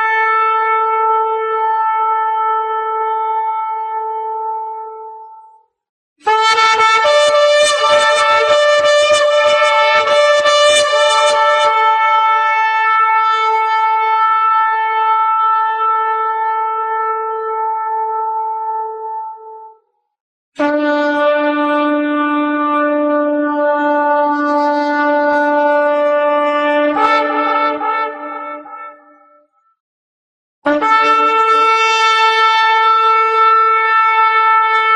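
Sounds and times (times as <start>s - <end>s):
horn blasts: 6.2s - 19.7s, 20.6s - 29.3s, 30.7s - 34.9s.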